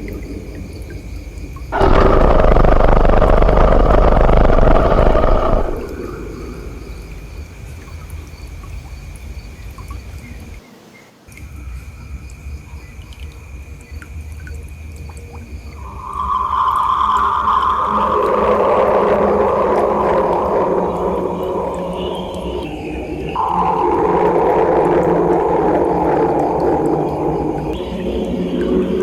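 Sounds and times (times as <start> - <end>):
steady high tone: 1.8 - 6.4, 15.8 - 27.6
monster roar: 1.8 - 6.9, 15.9 - 22.7
low rumble: 1.8 - 7.4, 15.8 - 29.0.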